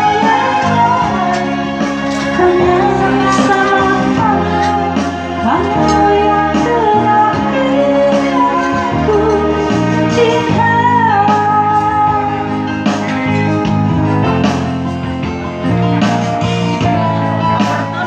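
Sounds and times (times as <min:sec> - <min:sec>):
person singing: 0:02.1 - 0:05.0
guitar accompaniment: 0:02.1 - 0:06.8.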